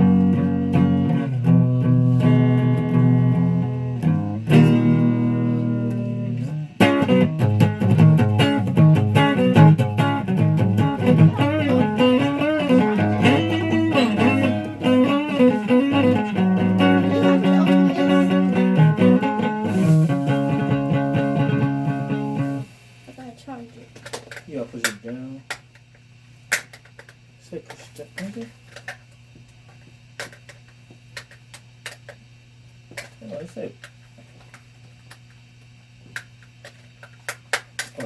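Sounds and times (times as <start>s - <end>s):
guitar chords and picked notes: 0.0s - 22.7s.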